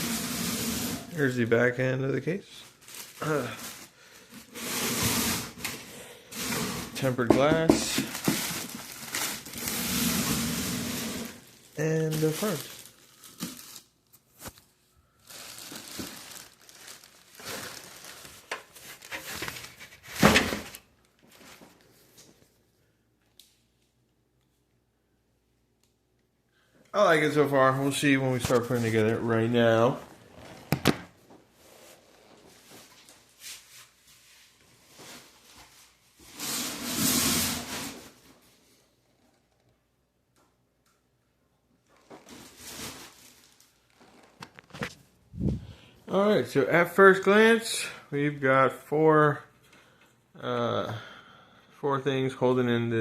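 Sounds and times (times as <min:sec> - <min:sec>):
packaging crinkling and rustling: 0:02.6 - 0:04.6, 0:06.4 - 0:22.4, 0:41.8 - 0:45.1.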